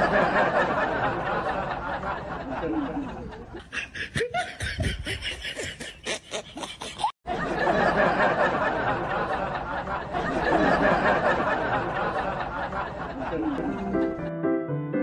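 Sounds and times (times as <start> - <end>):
snickering laughter: 2.2 - 13.6.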